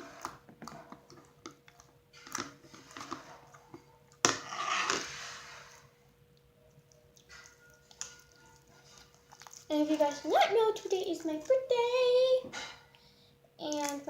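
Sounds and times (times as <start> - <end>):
slime squishing: 6.8 - 12.0.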